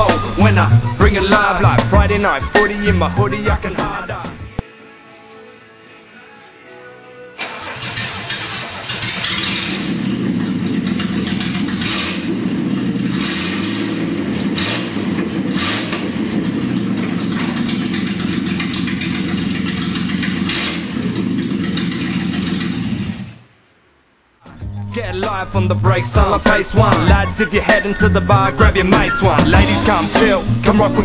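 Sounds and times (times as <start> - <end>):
car engine starting and revving: 7.4 - 23.5.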